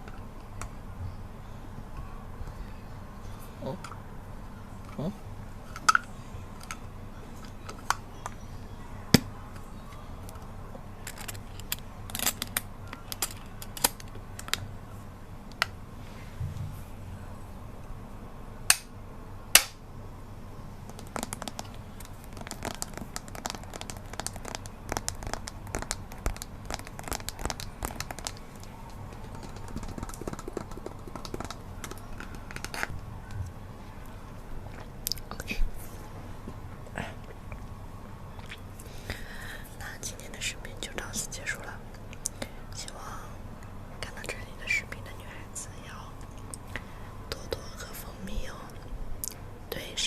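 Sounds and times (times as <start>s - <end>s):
low background hum: 0.0s - 50.0s
small crinkling crackles: 20.8s - 32.9s.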